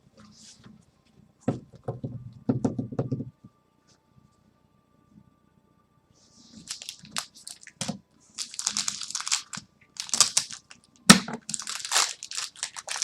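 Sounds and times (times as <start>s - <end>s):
plastic foil wrapper crinkling: 6.6s - 13.0s.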